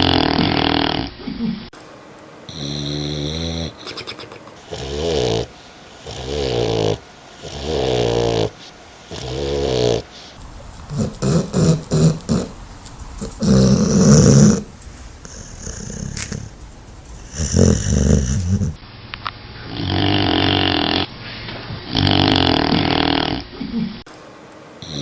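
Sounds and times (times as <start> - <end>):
dog snoring: 0.0 - 1.2, 2.5 - 12.6, 13.2 - 16.5, 17.1 - 18.8, 19.6 - 21.1, 21.9 - 23.5.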